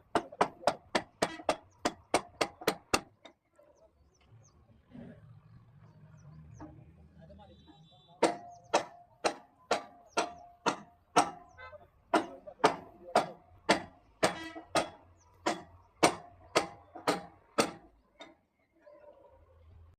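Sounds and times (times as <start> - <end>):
hammer blows on timber: 0.0 - 3.1, 8.2 - 17.9.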